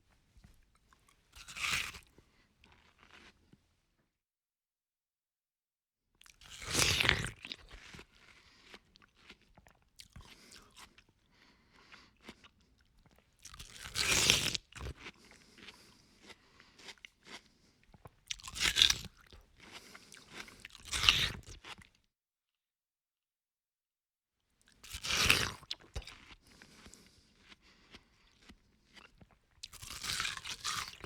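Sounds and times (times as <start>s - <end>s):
crunchy watermelon bites: 1.3s - 3.6s, 6.2s - 11.1s, 12.0s - 22.0s, 24.8s - 31.0s
wet chewing and slurping: 6.2s - 21.9s, 24.8s - 31.0s.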